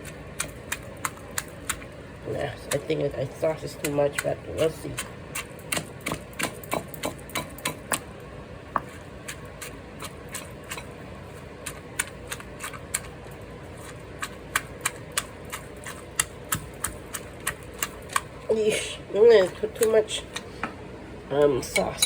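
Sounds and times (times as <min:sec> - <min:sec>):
wooden pestle knocking in mortar: 0:05.7 - 0:08.0.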